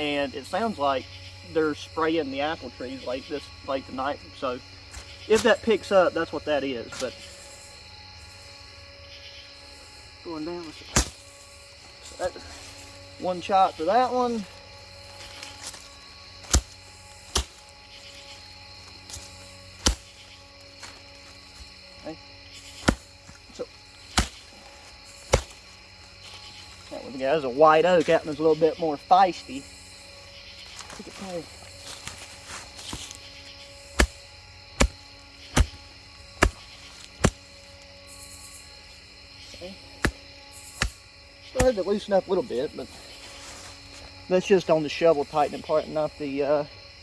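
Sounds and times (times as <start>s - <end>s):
shovel chopping through roots: 10.9s - 11.3s, 16.4s - 17.8s, 19.1s - 20.2s, 22.6s - 25.8s, 33.8s - 37.7s, 40.0s - 41.0s, 41.6s - 41.9s.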